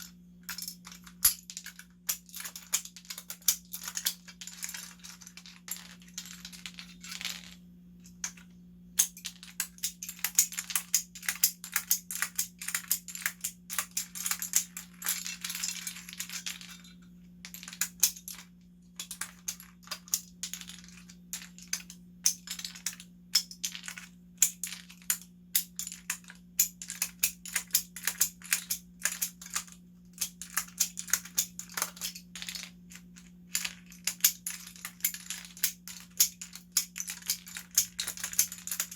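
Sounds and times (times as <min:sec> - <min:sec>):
steady low hum: 0:00.0 - 0:38.9
plastic keycaps clicking and clattering: 0:33.5 - 0:38.9.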